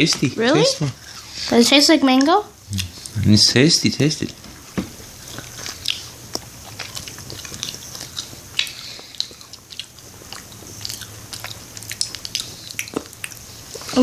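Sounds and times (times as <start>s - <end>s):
faint steady hum: 0.0s - 14.0s
person chewing gummy candy: 2.2s - 3.3s, 5.0s - 14.0s.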